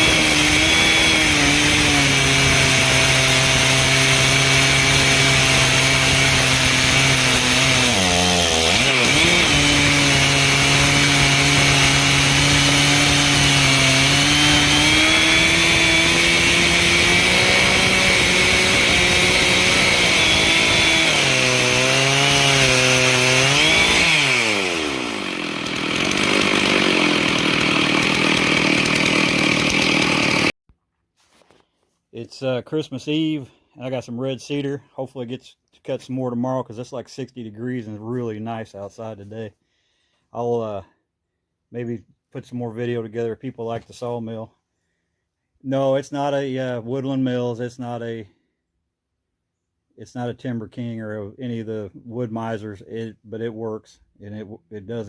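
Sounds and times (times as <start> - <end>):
chainsaw cutting through log: 0.0 - 30.6.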